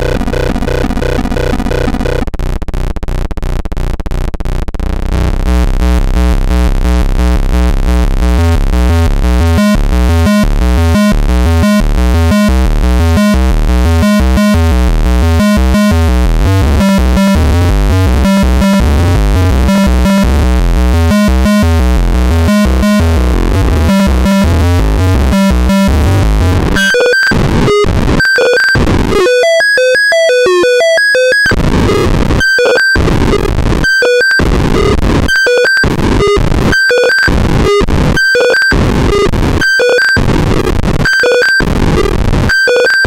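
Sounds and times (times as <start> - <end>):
stepped electronic tones: 0.0 - 2.3, 8.3 - 43.0
pulsing low bass: 0.0 - 2.4, 4.8 - 28.2.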